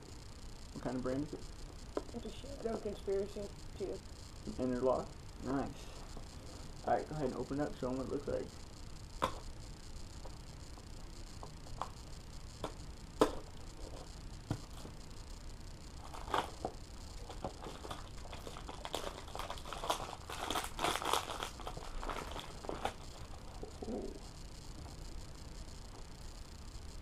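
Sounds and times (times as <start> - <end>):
plastic wrapping crinkling and tearing: 16.0 - 23.4.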